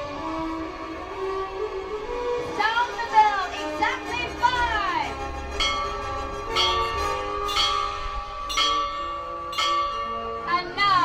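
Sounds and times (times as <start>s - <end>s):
bell ringing: 5.6s - 11.0s.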